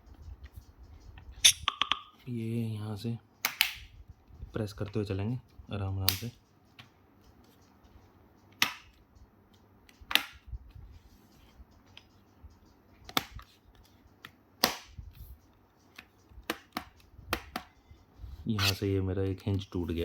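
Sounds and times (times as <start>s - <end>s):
plastic clips snapping into place: 3.4s - 3.8s, 8.6s - 9.0s, 10.0s - 10.5s, 13.1s - 13.5s, 14.6s - 15.0s, 16.4s - 17.7s.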